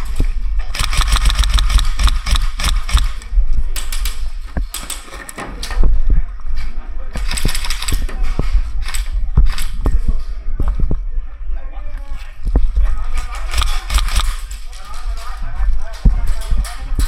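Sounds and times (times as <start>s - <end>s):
airsoft guns firing full auto: 0.7s - 3.2s, 13.5s - 14.5s.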